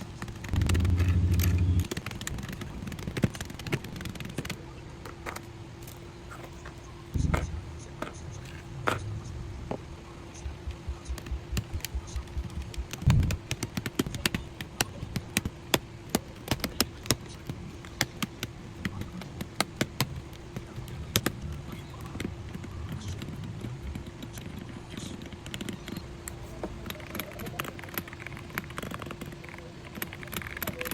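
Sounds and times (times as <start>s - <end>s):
faint steady hum: 0.0s - 30.9s
mechanical keyboard key clacks: 26.8s - 30.9s.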